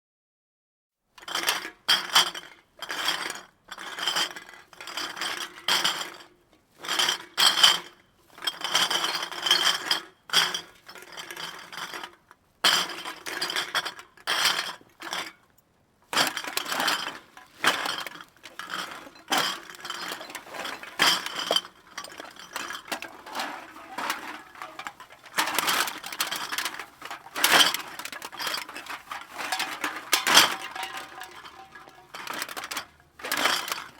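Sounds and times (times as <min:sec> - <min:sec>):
glass bottles clinking: 0:16.2 - 0:33.9.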